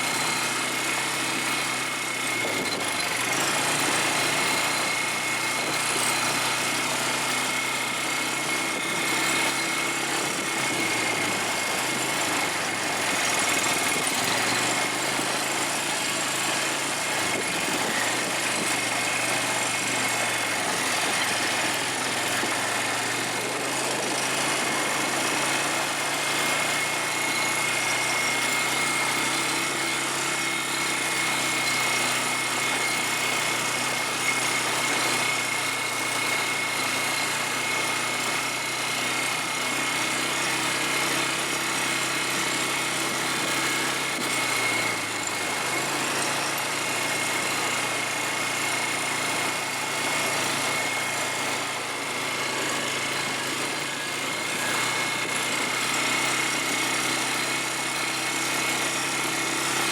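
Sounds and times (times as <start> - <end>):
quad bike engine running: 0.0 - 59.9.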